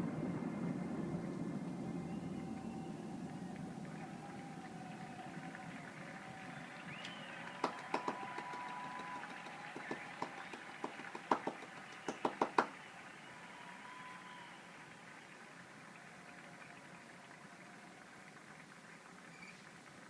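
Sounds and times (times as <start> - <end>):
fireworks cracking: 0.0 - 14.1.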